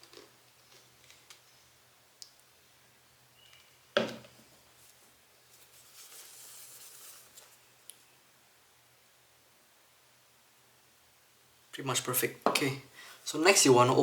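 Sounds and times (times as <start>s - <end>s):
tissue rubbing on lens: 4.7s - 7.7s.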